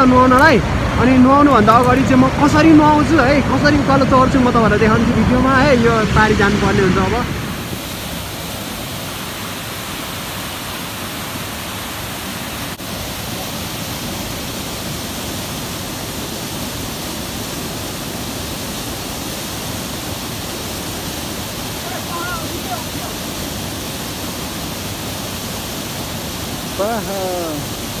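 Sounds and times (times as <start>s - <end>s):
waterfall rushing: 0.0s - 28.0s.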